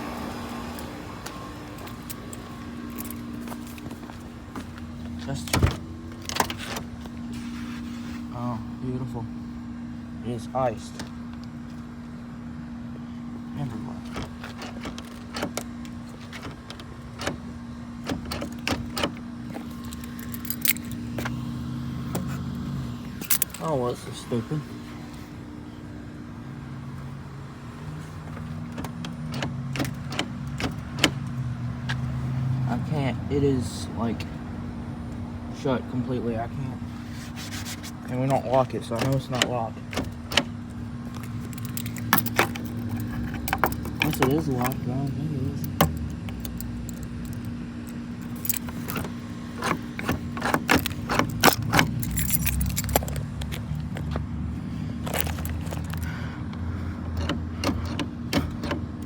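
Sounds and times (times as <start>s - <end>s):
keys jangling and clicking: 1.7s - 4.1s, 18.0s - 21.3s, 22.2s - 23.7s, 38.3s - 54.2s, 55.0s - 56.2s
car door handle clicking: 45.7s - 54.3s.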